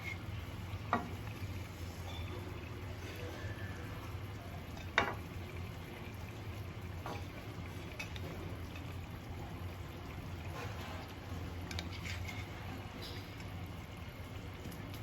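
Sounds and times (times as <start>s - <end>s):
food sizzling in a pan: 0.0s - 15.0s.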